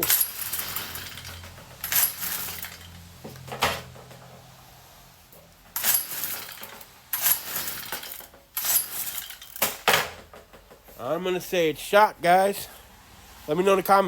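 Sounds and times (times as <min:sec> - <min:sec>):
recoil starter rattling whir: 0:00.0 - 0:04.3.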